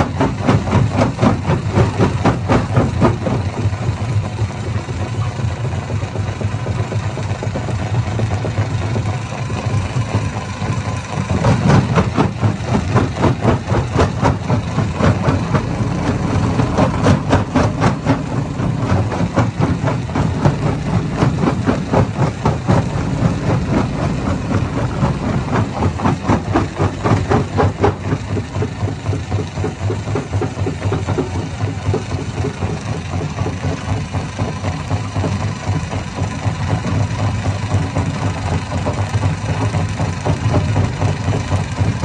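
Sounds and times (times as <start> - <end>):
stone crusher droning: 9.8 - 29.0.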